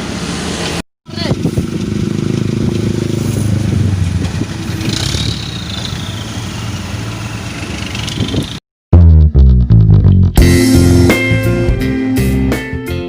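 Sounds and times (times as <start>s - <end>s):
heavy diesel engine running: 0.0s - 8.6s.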